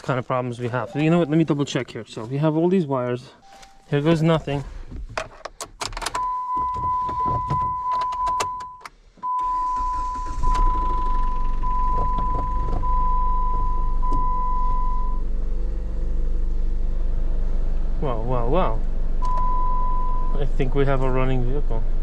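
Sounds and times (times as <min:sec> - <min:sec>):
car engine cranking and idling: 0:00.0 - 0:22.0
dashboard warning chime beeping: 0:00.7 - 0:01.8, 0:03.4 - 0:04.6, 0:06.2 - 0:15.2, 0:19.2 - 0:20.5.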